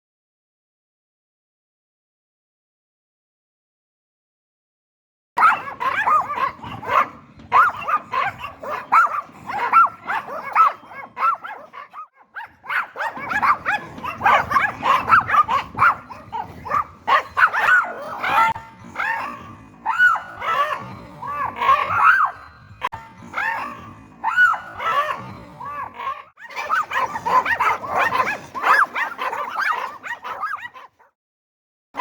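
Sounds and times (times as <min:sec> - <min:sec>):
small dog yapping: 0:05.4 - 0:31.1.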